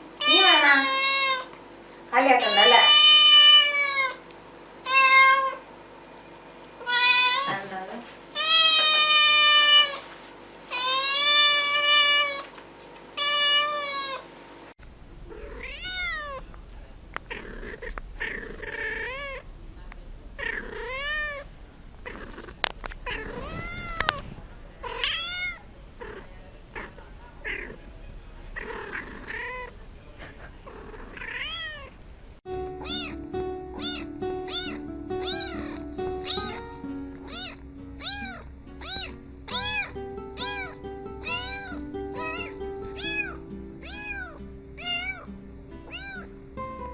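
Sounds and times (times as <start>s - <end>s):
cats meowing: 2.4s - 4.2s, 4.9s - 5.6s, 6.8s - 7.6s, 8.4s - 10.0s, 10.7s - 12.5s, 13.2s - 14.2s, 15.1s - 46.4s
music: 32.5s - 46.9s.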